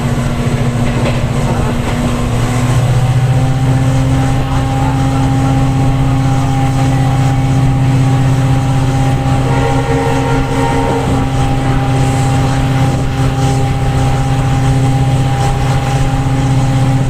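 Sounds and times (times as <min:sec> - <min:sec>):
locomotive diesel engine humming: 0:00.0 - 0:17.0
higher tones: 0:08.7 - 0:13.6.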